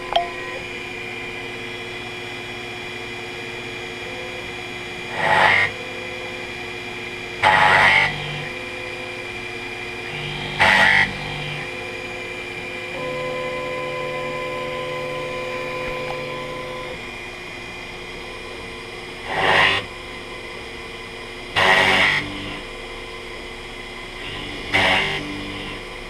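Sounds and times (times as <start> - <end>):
milling machine spindle whine: 0.0 - 26.0
motor tone: 0.0 - 26.0
loud rasping cutting bursts: 7.4 - 8.5, 10.1 - 11.6, 21.6 - 22.6, 24.2 - 25.8.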